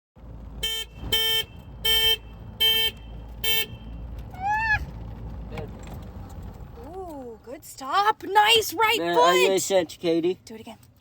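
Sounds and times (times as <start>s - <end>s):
vehicle horn honking: 0.6s - 4.1s.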